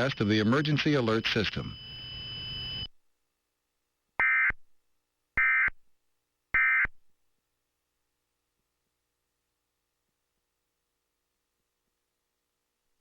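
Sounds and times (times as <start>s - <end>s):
harsh digital data tone bursts: 0.0s - 2.9s.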